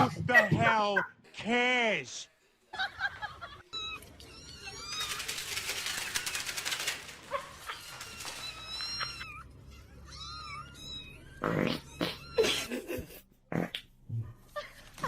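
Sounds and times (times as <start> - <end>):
cat meowing: 7.6 - 12.4.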